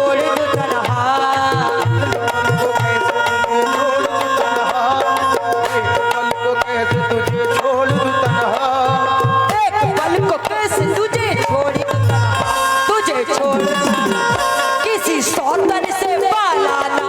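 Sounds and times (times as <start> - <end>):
tabla playing a steady rhythm: 0.0 - 17.0
sustained melodic tones: 12.0 - 15.2.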